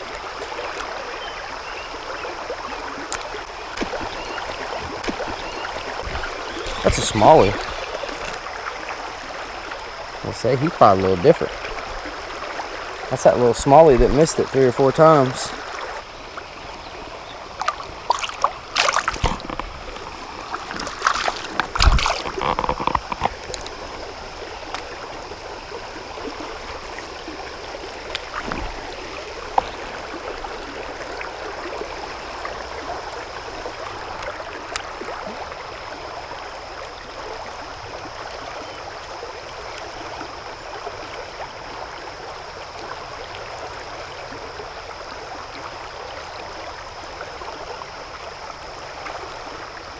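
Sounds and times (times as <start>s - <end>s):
creek water rushing: 0.0s - 49.9s
splashes and knocks: 3.0s - 8.4s, 17.6s - 25.1s, 28.0s - 30.4s.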